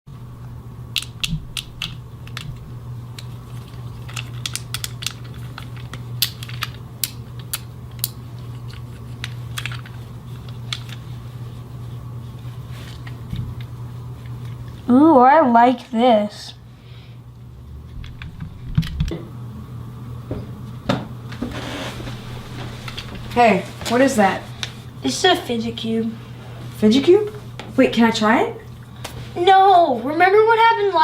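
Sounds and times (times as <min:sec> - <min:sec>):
low steady hum: 0:00.1 - 0:31.0
plastic clicks of fidget cube: 0:04.1 - 0:08.2.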